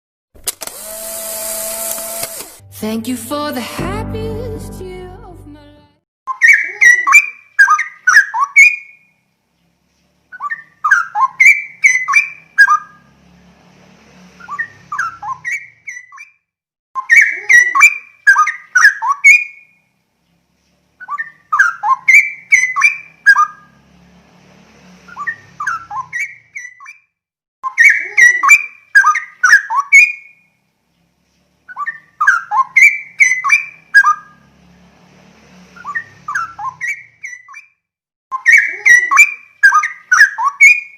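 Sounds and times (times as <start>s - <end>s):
bird singing whistled phrases: 6.3s - 9.1s, 10.3s - 12.9s, 17.0s - 19.7s, 21.0s - 23.6s, 27.6s - 30.4s, 31.7s - 34.3s, 38.3s - 40.9s.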